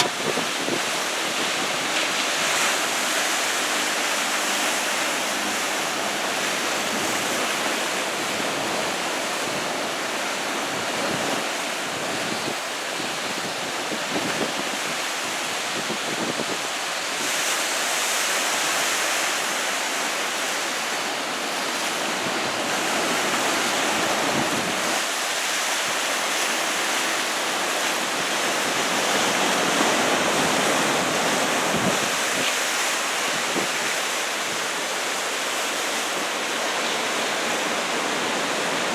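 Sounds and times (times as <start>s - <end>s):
wind buffeting microphone: 0.0s - 2.0s, 28.6s - 32.6s
ocean surf breaking: 0.0s - 38.9s.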